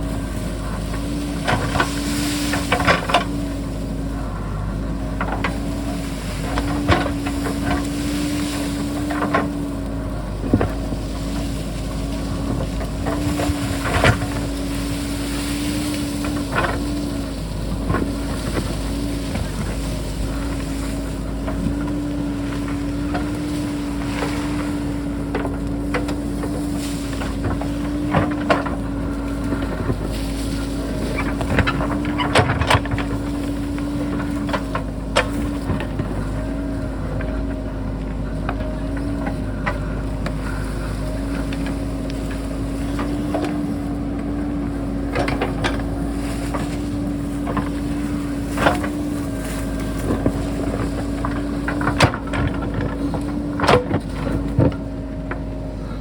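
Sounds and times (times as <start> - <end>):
diesel engine at high revs: 0.0 - 56.0
digging clanks and knocks: 0.0 - 56.0.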